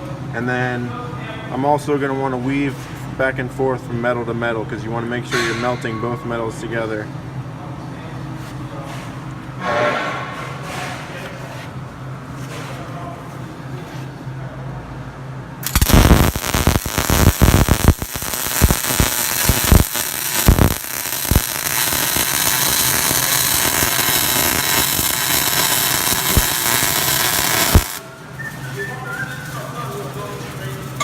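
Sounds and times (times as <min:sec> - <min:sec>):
welding arc crackling: 0:15.6 - 0:28.2.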